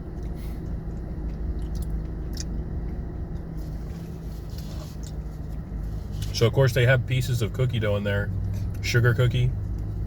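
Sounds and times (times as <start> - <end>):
quiet chewing: 0.0 - 6.3
car engine idling: 0.0 - 10.0.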